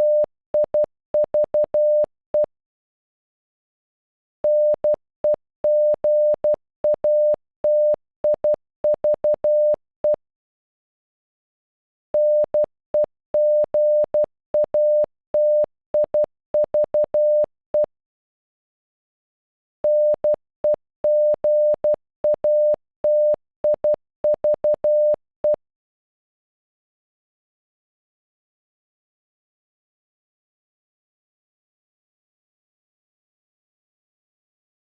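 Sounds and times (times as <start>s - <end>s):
morse code beeps: 0.0s - 2.5s, 4.5s - 5.0s, 5.7s - 10.2s, 12.2s - 17.9s, 19.9s - 20.4s, 21.1s - 25.6s.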